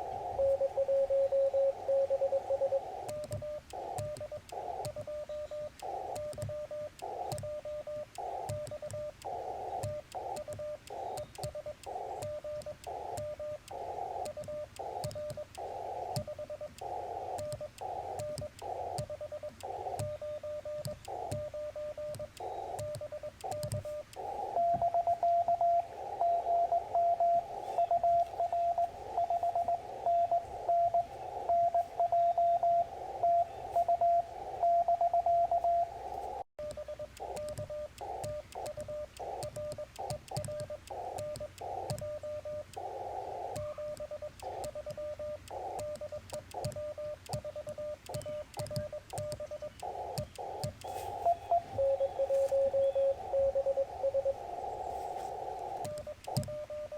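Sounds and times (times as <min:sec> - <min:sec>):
morse code tones: 0:00.0 - 0:56.9
receiver hiss: 0:00.0 - 0:56.9.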